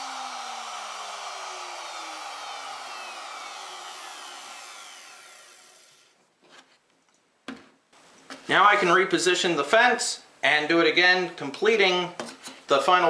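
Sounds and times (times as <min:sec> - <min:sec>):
router spinning down whine: 0:00.0 - 0:06.2.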